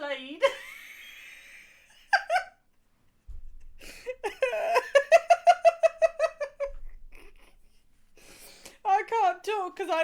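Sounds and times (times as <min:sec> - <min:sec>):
woman laughing hard: 0:00.4 - 0:02.6, 0:03.7 - 0:07.8.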